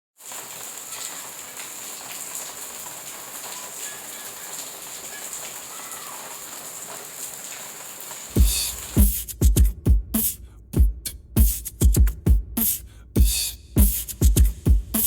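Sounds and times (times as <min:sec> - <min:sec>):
rain falling: 0:00.2 - 0:09.2.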